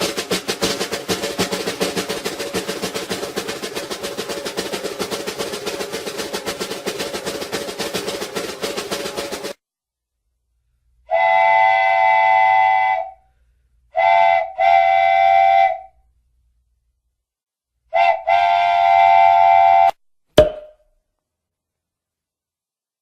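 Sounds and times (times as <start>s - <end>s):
cartoon steam train whistle: 11.1s - 13.2s, 13.9s - 15.9s, 17.9s - 20.0s
sharp knock: 20.4s - 20.8s.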